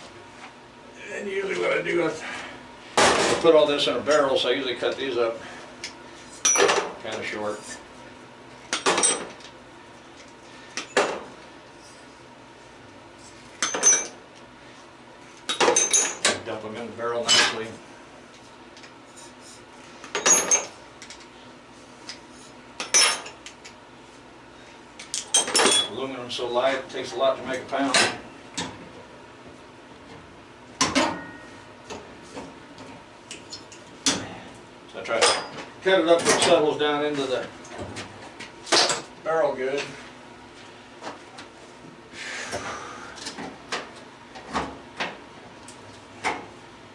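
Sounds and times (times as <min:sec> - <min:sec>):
metal pieces clinking and clattering: 0:20.1 - 0:20.7.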